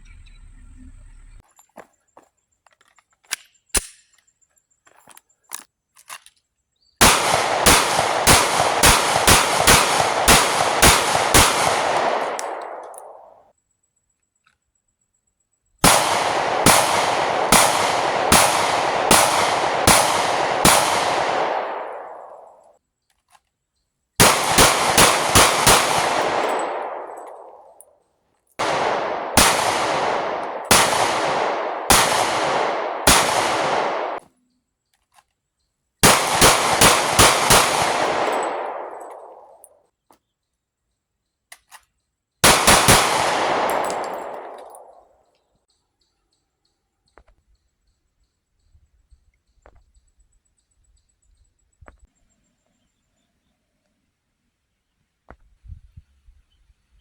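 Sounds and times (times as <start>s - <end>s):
echoing gunfire roll-off: 7.0s - 13.3s, 15.8s - 22.6s, 24.2s - 27.7s, 28.6s - 34.2s, 36.0s - 39.6s, 42.4s - 45.0s
rapid gunshots: 7.0s - 13.3s, 15.8s - 22.5s, 24.2s - 27.6s, 28.6s - 34.2s, 36.0s - 39.5s, 42.4s - 44.9s.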